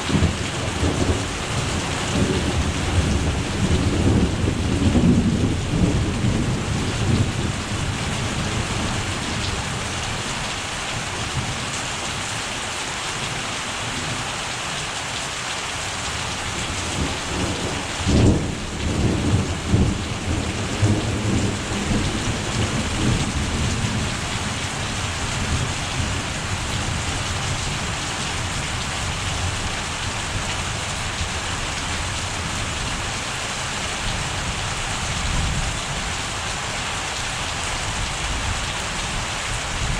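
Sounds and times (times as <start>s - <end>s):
thunder rumbling: 0.0s - 9.9s, 16.5s - 32.6s
heavy rain: 0.0s - 39.9s.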